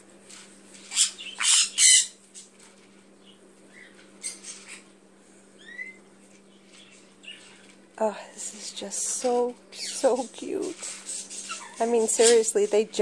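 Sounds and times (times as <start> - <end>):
parrots squawking: 0.8 - 2.2, 3.7 - 4.9, 5.6 - 6.0, 9.7 - 12.4.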